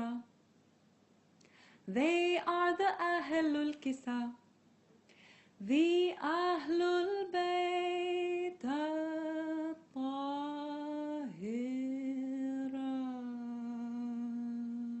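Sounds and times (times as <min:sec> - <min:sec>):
woman singing long notes: 0:00.0 - 0:00.3, 0:05.6 - 0:15.0.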